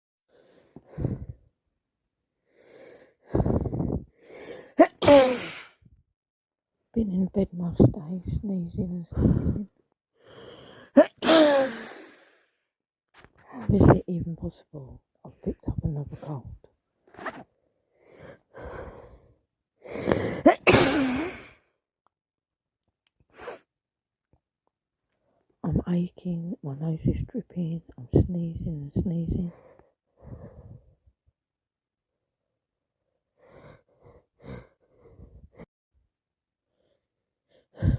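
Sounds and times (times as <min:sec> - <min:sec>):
woman breathing noisily: 0:00.3 - 0:01.5, 0:02.4 - 0:04.8, 0:10.2 - 0:12.5, 0:17.9 - 0:20.4, 0:29.5 - 0:31.0, 0:33.3 - 0:35.7
woman sneezing: 0:04.8 - 0:05.8, 0:11.0 - 0:12.1, 0:20.4 - 0:21.5
gasping inhale: 0:10.2 - 0:11.0, 0:17.9 - 0:20.4, 0:33.4 - 0:35.7.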